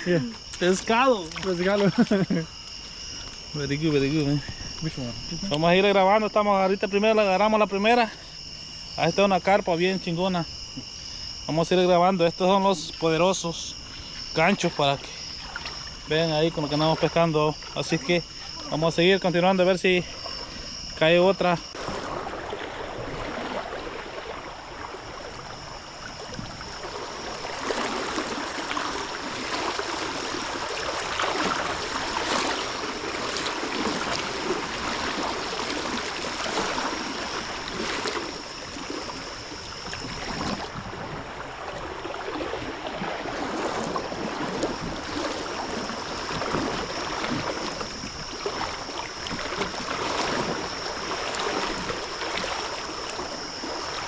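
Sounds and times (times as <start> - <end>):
crickets trilling: 0.0 - 54.0
river water rushing: 21.7 - 54.0.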